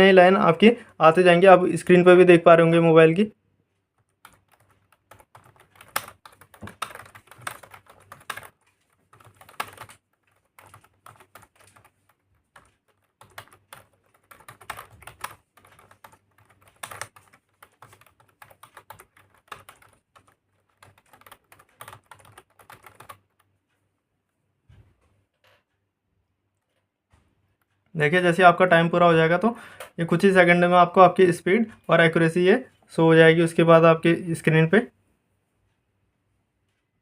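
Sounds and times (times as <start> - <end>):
fast typing on a keyboard: 4.0 - 23.5.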